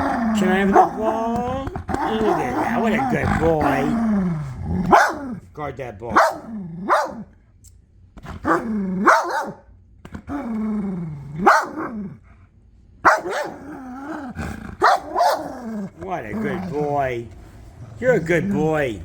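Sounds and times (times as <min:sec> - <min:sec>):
dog growling and barking: 0:00.0 - 0:07.4, 0:08.2 - 0:12.4, 0:13.0 - 0:18.7.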